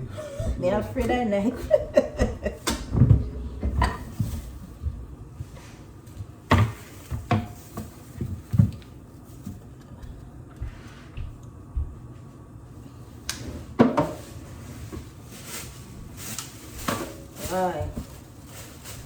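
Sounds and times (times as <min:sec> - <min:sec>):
kitchen knocks and clatters: 0:01.6 - 0:05.8.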